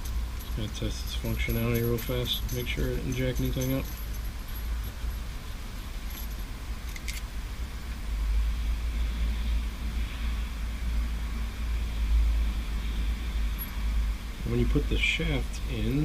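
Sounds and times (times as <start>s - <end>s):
steady low rumble: 0.0s - 16.0s.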